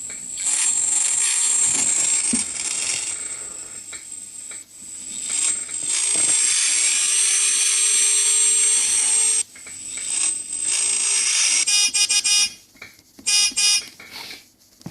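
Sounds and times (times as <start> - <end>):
short repeated tones: 13.3 - 13.9.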